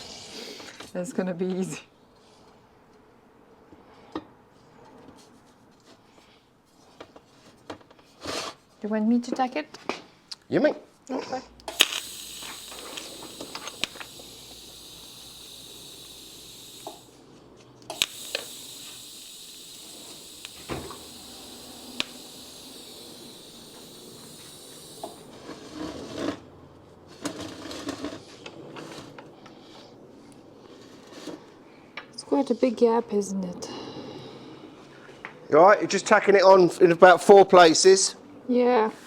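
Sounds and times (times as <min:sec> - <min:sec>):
welding arc crack: 0:11.6 - 0:25.4
welding arc hissing and buzzing: 0:11.6 - 0:25.4.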